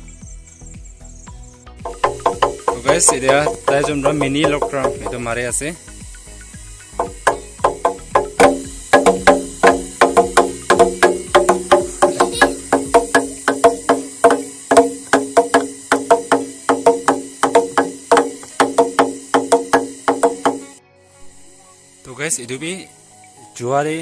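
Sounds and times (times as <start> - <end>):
quick struck or plucked notes: 1.9 - 6.2, 7.0 - 20.8.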